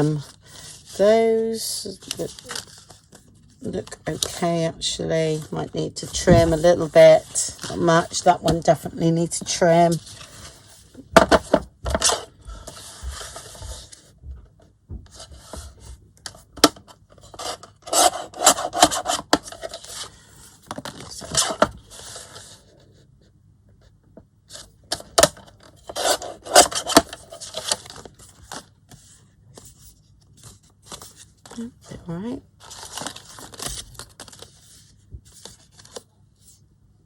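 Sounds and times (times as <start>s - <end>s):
paper scraping and rubbing: 17.2s - 23.0s, 25.7s - 31.6s.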